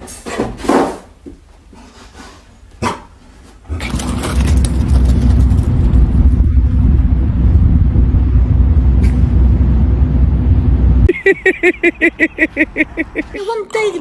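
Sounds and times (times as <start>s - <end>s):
loud steady low rumble: 3.9s - 11.1s.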